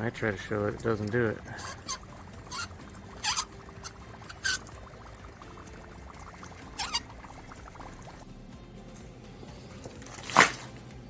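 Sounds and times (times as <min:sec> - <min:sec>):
dry ice hissing squeaks: 0:00.3 - 0:08.2.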